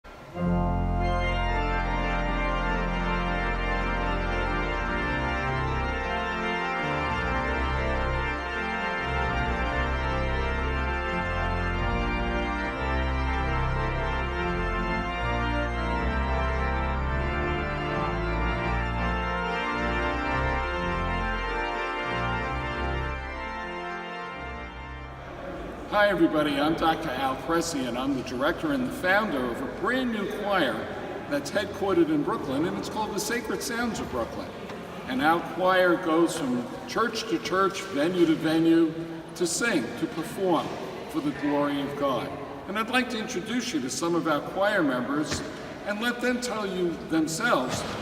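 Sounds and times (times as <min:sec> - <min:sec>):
organ music: 0:00.0 - 0:48.0.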